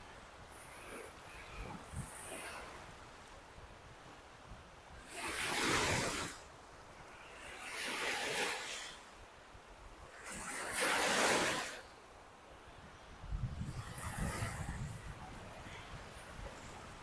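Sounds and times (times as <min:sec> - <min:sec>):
low hiss of water: 0:00.0 - 0:17.0
waves breaking on a beach: 0:00.0 - 0:17.0.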